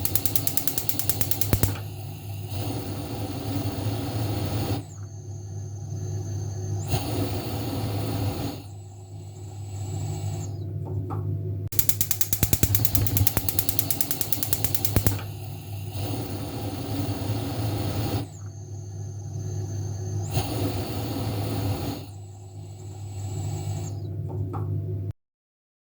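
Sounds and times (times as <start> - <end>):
stove controls clicking: 0.0 - 2.0, 11.7 - 15.6.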